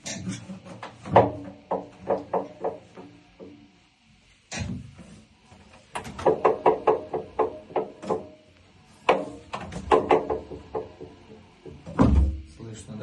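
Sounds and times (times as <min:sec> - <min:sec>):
washing machine drum knocking: 0:00.8 - 0:03.7, 0:05.9 - 0:08.4, 0:09.0 - 0:12.5.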